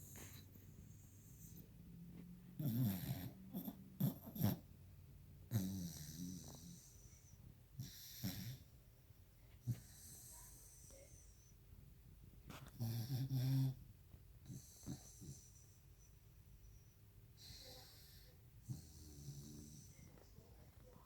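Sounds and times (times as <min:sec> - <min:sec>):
dog snoring: 0:00.0 - 0:04.7, 0:05.5 - 0:08.7, 0:09.6 - 0:11.3, 0:12.6 - 0:13.8, 0:14.4 - 0:15.8, 0:17.4 - 0:20.2
dog snorting: 0:02.6 - 0:04.7.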